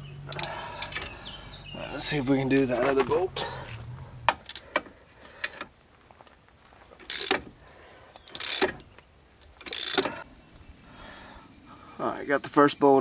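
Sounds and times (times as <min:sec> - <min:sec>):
ratchet clicking: 0:00.2 - 0:01.2, 0:04.4 - 0:04.6, 0:07.0 - 0:07.4, 0:08.2 - 0:08.9, 0:09.6 - 0:10.2.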